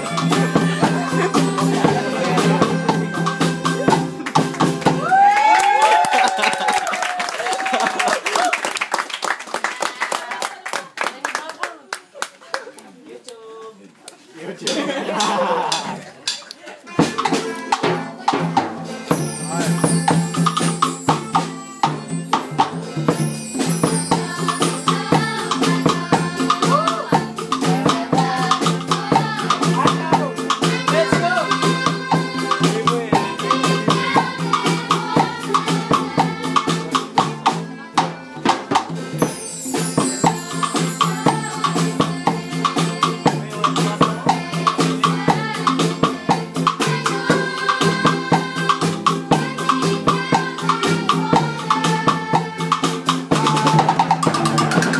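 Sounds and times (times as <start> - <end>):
voices singing: 0.0 - 5.0, 16.7 - 54.9
shakers and drums beat: 0.0 - 8.3, 14.1 - 54.9.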